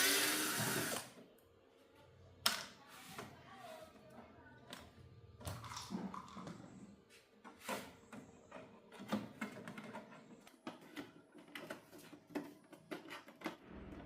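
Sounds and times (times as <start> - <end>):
tools clicking and tapping: 8.1 - 13.6.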